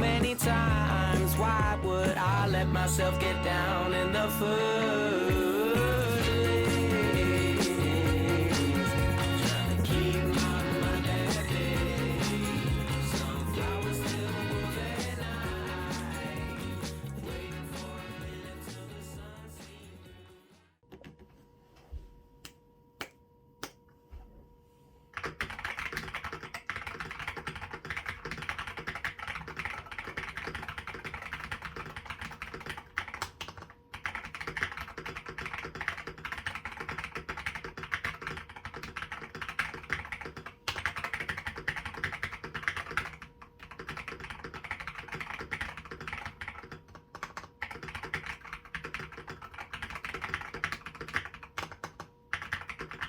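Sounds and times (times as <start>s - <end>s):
typing on mechanical keyboard: 25.2s - 53.0s.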